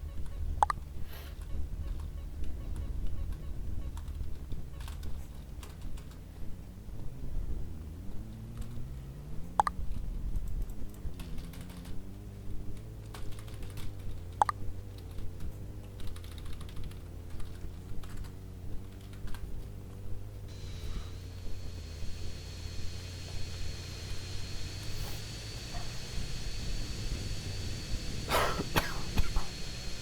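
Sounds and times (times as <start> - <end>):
engine clicking and ticking: 0.0 - 30.0
engine running unevenly: 0.0 - 30.0.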